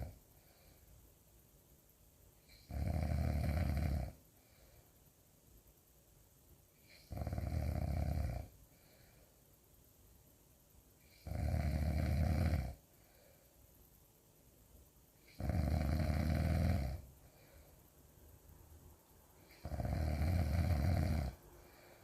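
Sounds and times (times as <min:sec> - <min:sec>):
quiet breathing: 0:00.0 - 0:22.0
loud snoring: 0:02.5 - 0:04.2, 0:06.9 - 0:08.5, 0:11.1 - 0:12.8, 0:15.3 - 0:17.1, 0:19.5 - 0:21.4.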